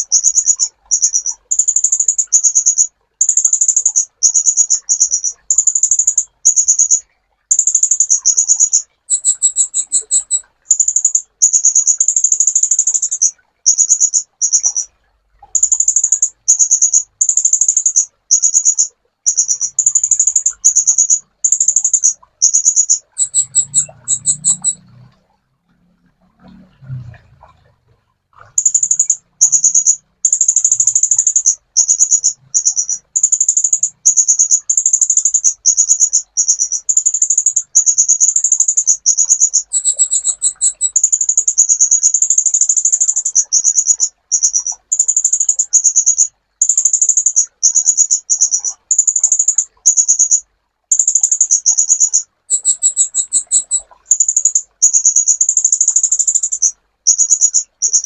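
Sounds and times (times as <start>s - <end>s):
bird chattering trills: 0.0s - 14.9s, 15.5s - 24.9s, 28.4s - 58.0s.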